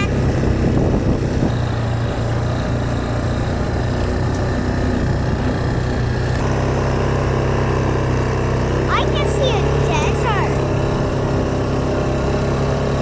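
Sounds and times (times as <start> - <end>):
quad bike engine running: 0.0 - 13.0.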